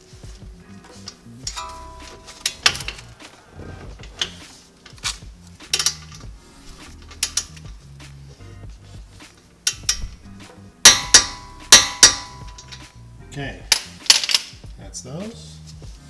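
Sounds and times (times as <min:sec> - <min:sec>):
torque wrench clicking: 0:05.0 - 0:06.3, 0:07.0 - 0:07.7, 0:09.7 - 0:10.3, 0:10.9 - 0:12.9, 0:13.7 - 0:14.6.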